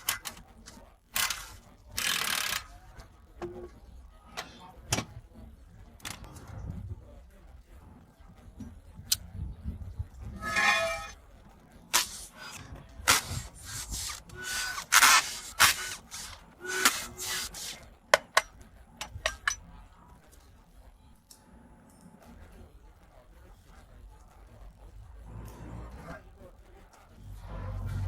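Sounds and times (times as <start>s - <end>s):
scraping and rubbing on metal: 10.2s - 11.2s, 11.9s - 19.6s
metal knocks and clinks: 18.4s - 19.6s.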